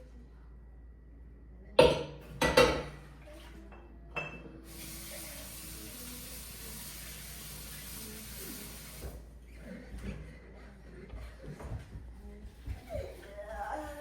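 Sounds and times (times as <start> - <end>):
dishes clinking: 1.8 - 3.0, 3.7 - 4.6
tap water running: 4.6 - 9.2.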